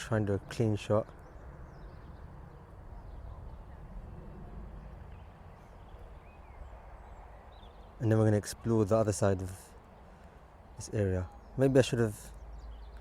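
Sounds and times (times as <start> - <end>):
faint bird chirps: 0.0 - 9.0.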